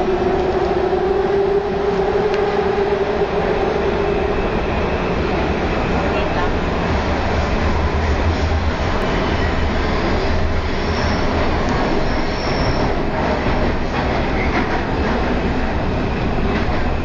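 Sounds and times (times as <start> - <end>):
subway train wheels rumbling: 0.0 - 17.0
faint high wheel squeal: 12.0 - 13.0.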